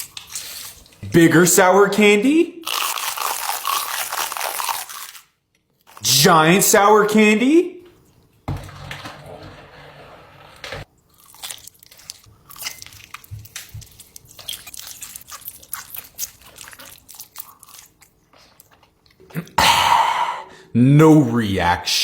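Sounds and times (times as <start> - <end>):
person chewing crunchy candy: 2.6 - 6.2, 11.0 - 19.6.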